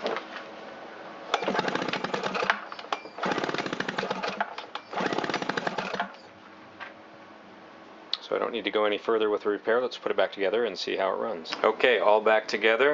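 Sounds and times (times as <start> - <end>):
engine cranking with rapid clicking: 1.3 - 6.2
recoil starter pulls: 1.3 - 6.2.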